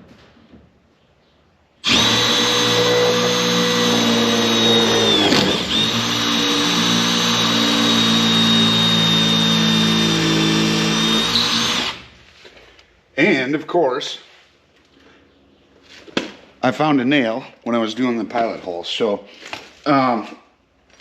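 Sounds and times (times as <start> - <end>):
impact driver drilling into wood: 1.8 - 12.1.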